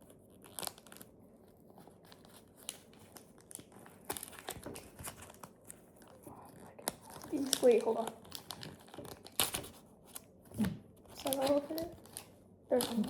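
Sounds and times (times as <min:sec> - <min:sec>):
wrapper crinkling: 0:00.3 - 0:01.2, 0:01.9 - 0:13.0
packet tearing: 0:06.7 - 0:13.0.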